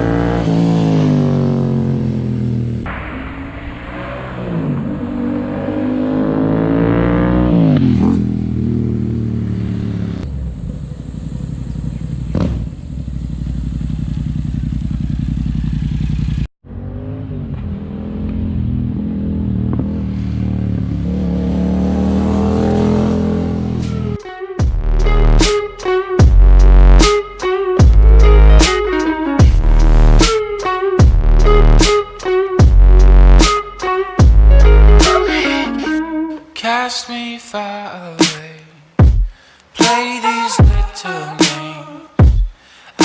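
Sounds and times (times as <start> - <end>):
motorcycle engine revving: 0.0 - 25.5.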